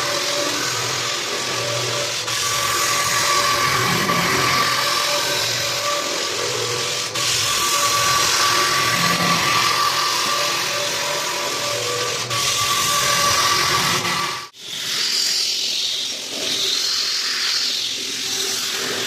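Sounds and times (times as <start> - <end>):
floor sander grinding and whining: 0.0 - 14.6.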